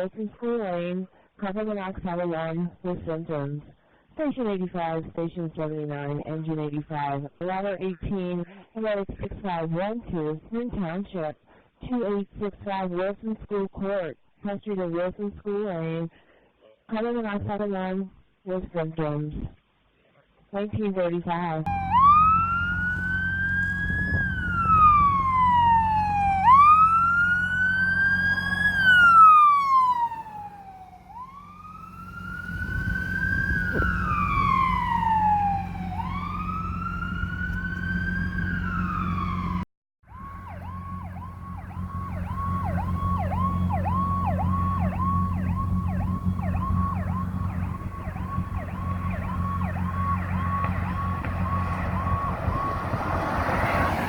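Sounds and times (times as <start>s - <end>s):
electronic siren wailing: 21.7s - 54.0s
low hum: 21.7s - 54.0s.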